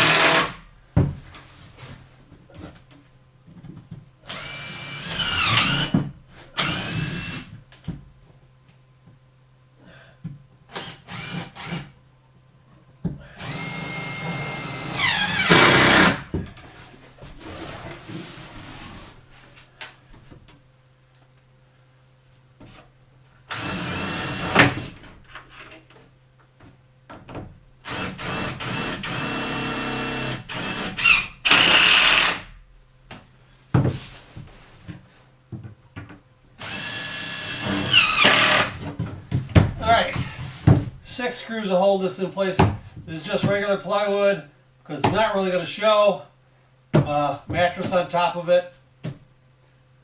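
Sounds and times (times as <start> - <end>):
power drill driving screws into wood: 0.0 - 0.6, 4.3 - 6.0, 6.6 - 7.5, 10.7 - 11.9, 13.4 - 16.3, 23.5 - 25.0, 27.8 - 32.5, 36.6 - 38.8.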